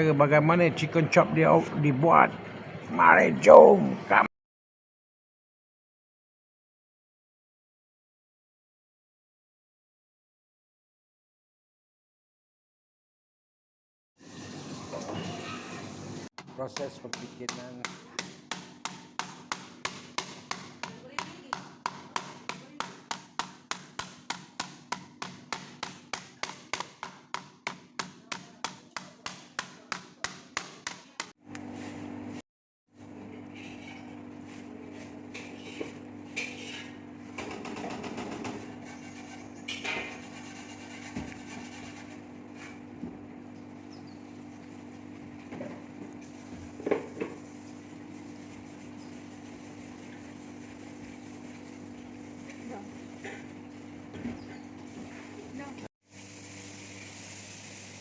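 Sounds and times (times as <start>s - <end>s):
low machine hum: 0.0s - 4.3s
knife strikes on chopping board: 16.4s - 31.3s.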